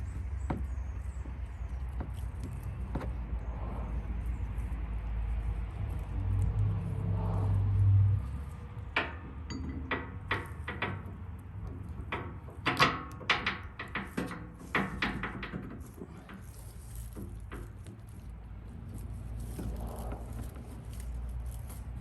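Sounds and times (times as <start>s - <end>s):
metal hardware knocking and clanking: 8.9s - 18.2s.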